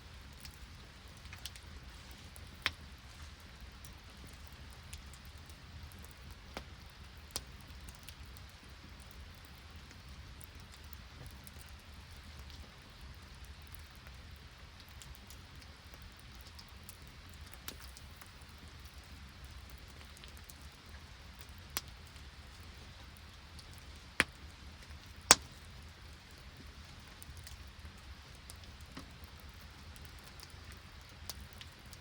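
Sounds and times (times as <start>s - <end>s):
rain and sleet hissing: 0.2s - 4.7s
campfire pops: 0.3s - 5.2s, 16.2s - 32.0s.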